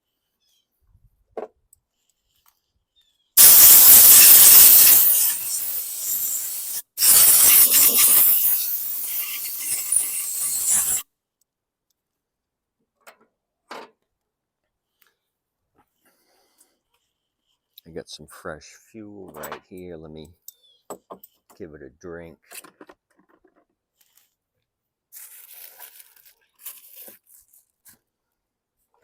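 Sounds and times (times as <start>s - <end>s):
pressurised spray hissing: 3.4s - 11.0s.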